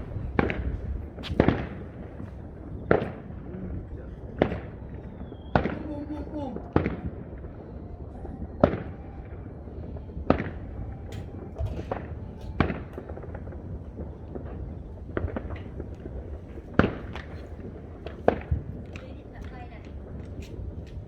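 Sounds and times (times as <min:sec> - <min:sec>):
fireworks bangs: 0:00.0 - 0:21.0
steady low rumble: 0:00.0 - 0:21.0.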